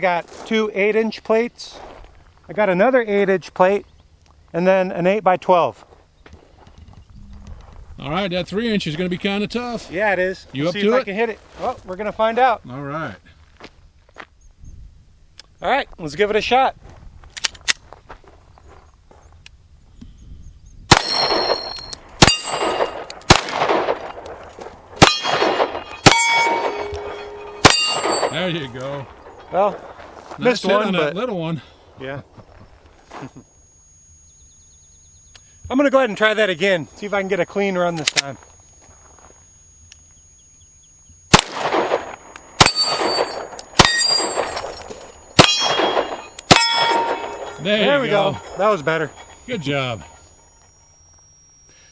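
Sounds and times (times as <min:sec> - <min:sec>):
steel target clanging: 0:20.9 - 0:24.2, 0:25.0 - 0:29.5, 0:41.3 - 0:50.0
gunshots: 0:20.9 - 0:24.3, 0:25.0 - 0:28.6, 0:41.3 - 0:44.8, 0:45.4 - 0:48.6
pistol shots: 0:20.9 - 0:24.4, 0:25.0 - 0:28.5, 0:41.3 - 0:48.6.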